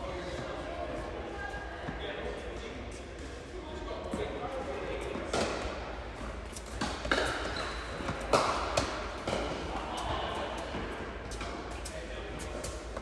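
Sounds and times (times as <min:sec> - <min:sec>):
tennis ball knocks: 0:08.0 - 0:09.5.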